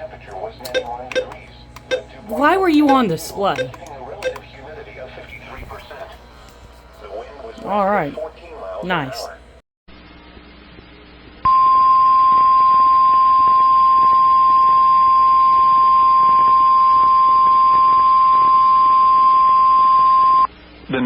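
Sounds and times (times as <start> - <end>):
steady high alarm tone: 0.6 - 4.5.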